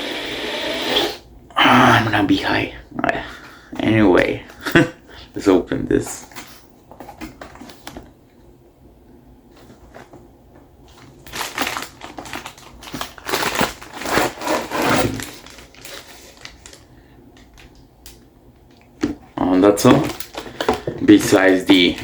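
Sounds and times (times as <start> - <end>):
cardboard box packaging rustling: 10.9 - 17.6, 19.8 - 22.0.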